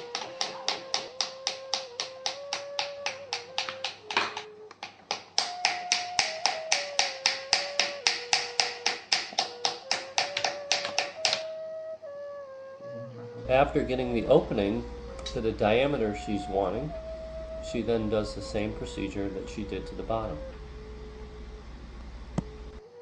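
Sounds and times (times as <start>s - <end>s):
paddle tapping clay pot: 0.0s - 11.5s.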